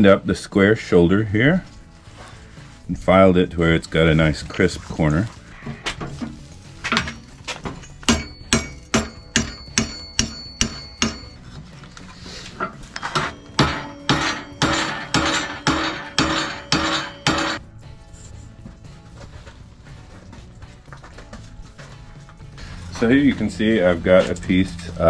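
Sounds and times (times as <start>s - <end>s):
hammer striking steel on anvil: 7.9s - 11.5s, 12.5s - 17.6s.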